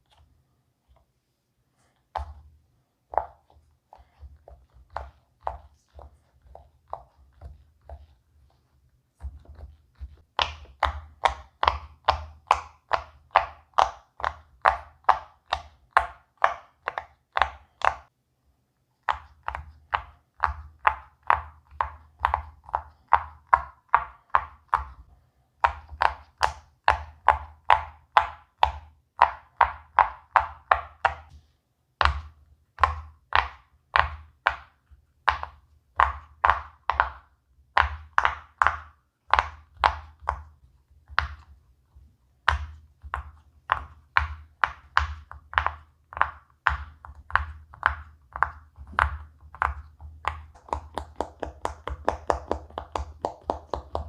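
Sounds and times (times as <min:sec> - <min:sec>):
fidget toy bubbles popping: 0:42.5 - 0:54.0.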